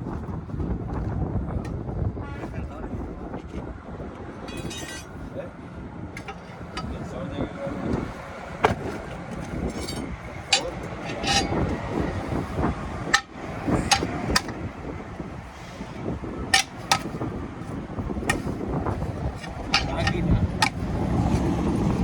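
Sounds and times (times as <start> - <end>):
low wind rumble: 0.0 - 22.0
metal tools knocking on wheel rim: 4.4 - 5.2, 6.2 - 7.1, 8.0 - 12.4, 13.0 - 15.0, 15.6 - 21.4.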